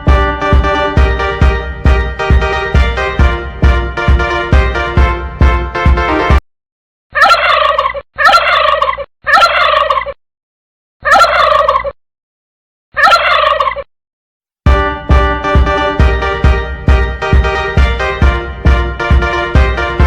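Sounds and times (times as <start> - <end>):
music: 0.0 - 6.4, 14.7 - 20.0.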